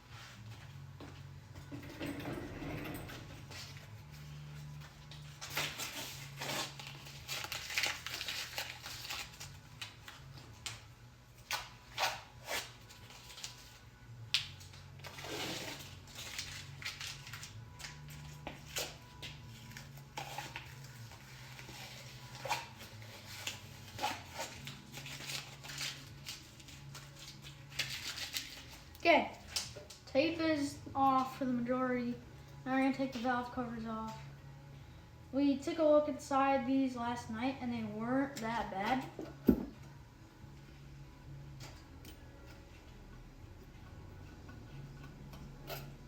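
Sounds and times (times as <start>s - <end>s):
low steady hum: 0.0s - 46.0s
tape peeling in crackling rips: 5.1s - 30.0s.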